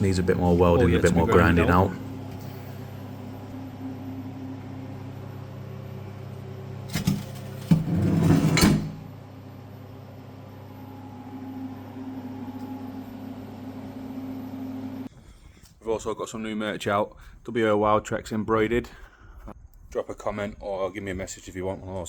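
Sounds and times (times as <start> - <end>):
low hum: 0.0 - 15.1.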